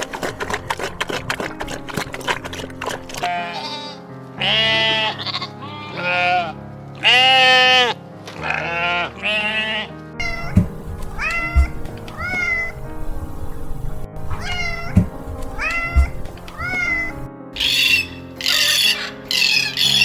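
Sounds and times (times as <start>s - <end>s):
animal bleating: 3.3s - 12.9s, 14.3s - 20.0s
cat meowing: 10.2s - 12.8s, 14.4s - 20.0s.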